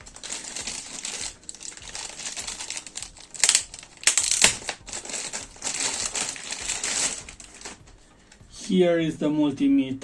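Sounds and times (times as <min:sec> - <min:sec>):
packaging crinkling: 0:00.0 - 0:08.4.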